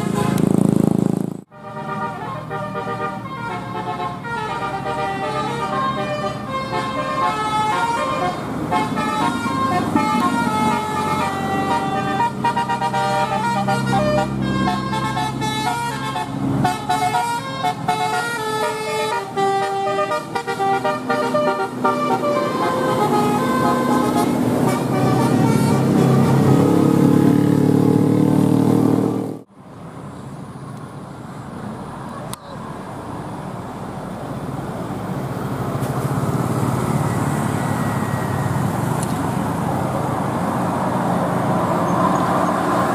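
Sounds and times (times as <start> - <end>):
multi-tone musical bus horn: 0.0 - 0.6, 1.5 - 27.1
road noise: 0.0 - 42.9.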